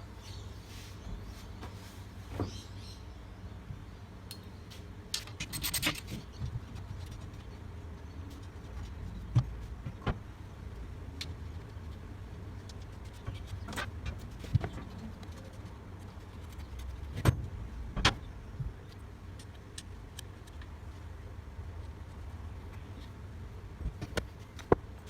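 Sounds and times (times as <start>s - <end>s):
low steady rumble: 2.8s - 25.0s
metal parts knocking and clinking: 5.2s - 6.2s.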